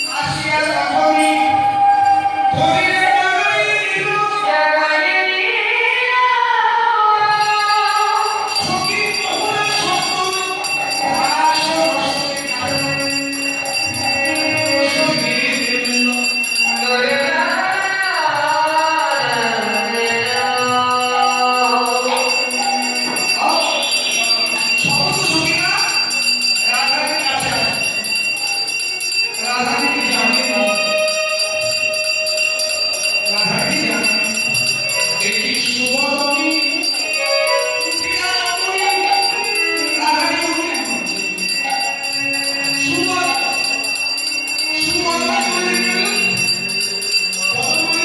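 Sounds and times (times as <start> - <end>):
jingling bells: 0.0 - 2.6, 7.2 - 48.0
group devotional singing: 7.1 - 26.4.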